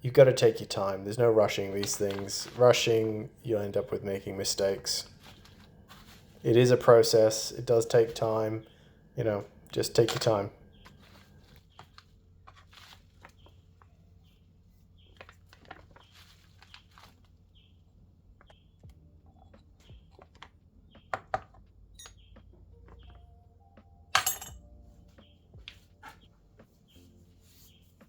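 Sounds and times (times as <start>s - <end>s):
metal engine parts clinking: 24.2s - 24.6s
metal parts clattering: 24.2s - 24.6s.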